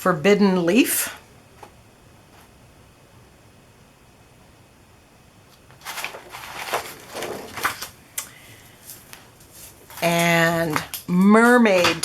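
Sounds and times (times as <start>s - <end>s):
packages rustling and crinkling: 5.5s - 12.0s.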